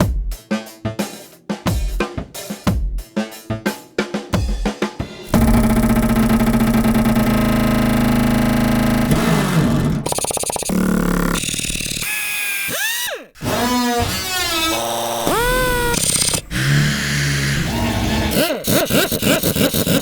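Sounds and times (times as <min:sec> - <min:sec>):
air tool humming: 0:05.3 - 0:20.0
sharp pneumatic hits: 0:05.3 - 0:20.0.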